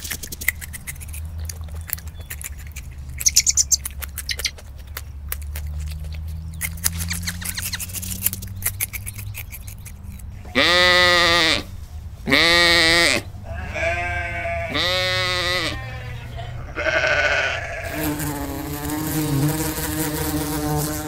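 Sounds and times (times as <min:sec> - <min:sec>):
sheep bleating: 0:10.5 - 0:11.7, 0:12.3 - 0:18.2.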